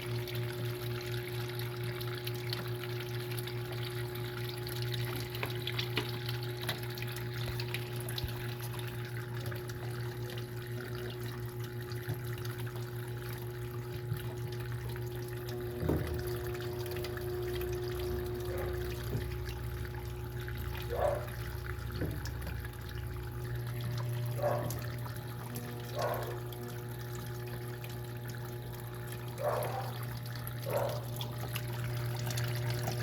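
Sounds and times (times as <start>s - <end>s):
washing machine hum: 0.0s - 33.0s
water pouring into drum: 0.0s - 33.0s
steady machine tones: 14.8s - 29.2s.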